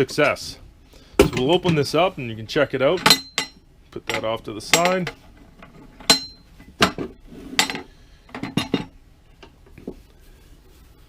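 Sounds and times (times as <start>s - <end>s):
metal box clanking: 2.9s - 9.0s.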